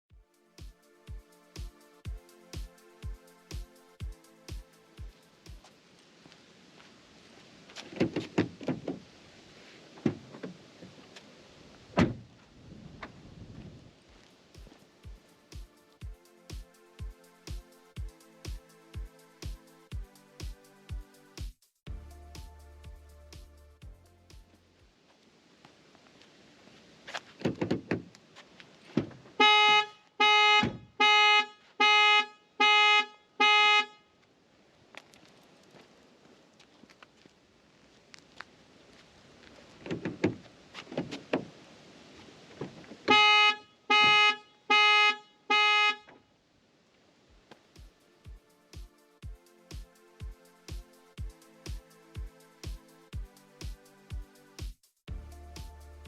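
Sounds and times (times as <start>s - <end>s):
car door thud: 8.0s - 9.0s, 12.0s - 12.3s, 27.4s - 28.1s, 30.6s - 30.9s
car door knocks and clicks: 27.4s - 28.1s
car horn blasts: 29.4s - 34.1s, 43.1s - 46.1s.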